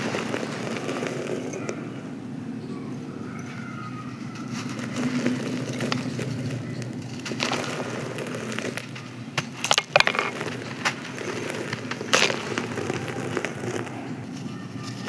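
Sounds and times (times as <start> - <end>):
dry sand-cement crunching: 0.0 - 15.0
sharp cracks and snaps: 4.5 - 15.0.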